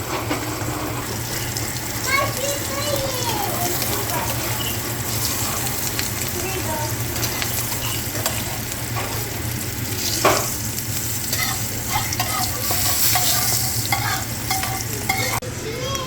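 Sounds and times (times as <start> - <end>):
food sizzling in a hot pan: 0.2 - 16.0
utensil clinking against a pan: 1.1 - 9.2, 11.2 - 15.4.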